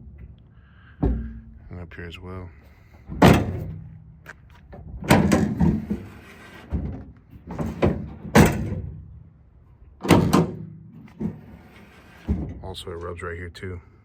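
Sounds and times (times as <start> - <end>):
tailgate metallic clunks: 1.0 - 1.6, 3.0 - 9.1, 10.0 - 12.6.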